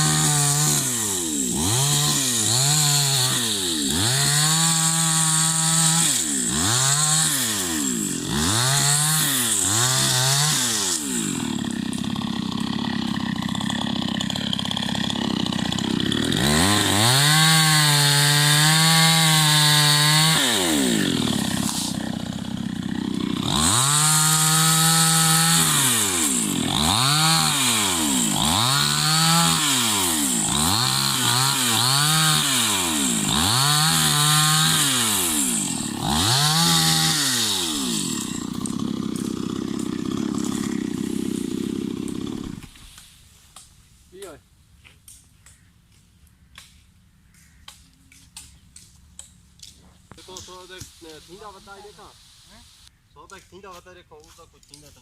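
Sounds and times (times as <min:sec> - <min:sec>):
chainsaw engine revving: 0:00.0 - 0:42.9
chainsaw cutting wood: 0:00.0 - 0:44.4, 0:48.2 - 0:52.1.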